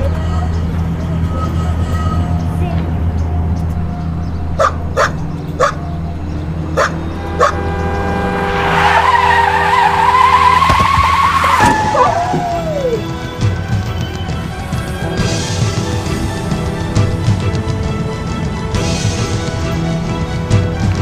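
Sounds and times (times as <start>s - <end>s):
car tyres screeching: 4.0s - 13.4s
dog barking: 4.6s - 5.8s, 6.8s - 7.6s
dog crying out: 11.6s - 13.0s.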